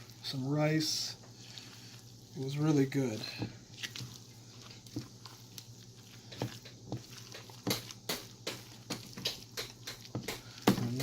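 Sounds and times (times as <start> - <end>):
utensil folding thick dip: 1.4 - 11.0
utensil knocking a bowl: 7.6 - 11.0.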